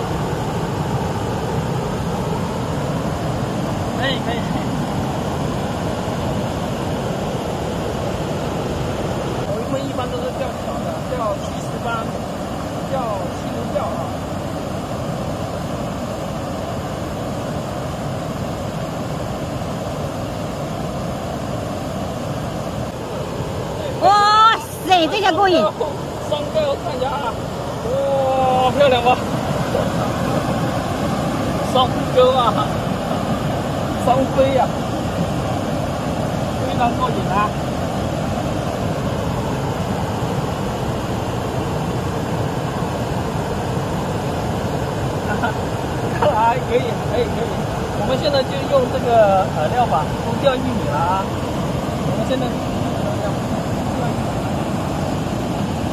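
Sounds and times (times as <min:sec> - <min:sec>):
stream rushing: 0:00.0 - 0:55.9.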